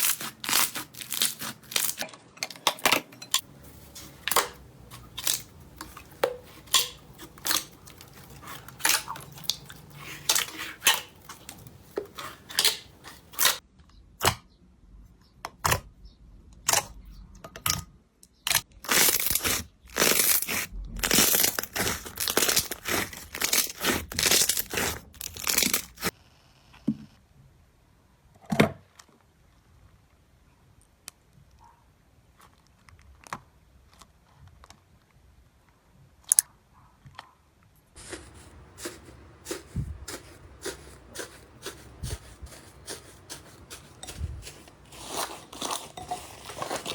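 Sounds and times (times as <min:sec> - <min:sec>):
slime popping and crackling: 0:00.0 - 0:02.0, 0:04.2 - 0:13.6, 0:18.5 - 0:26.1.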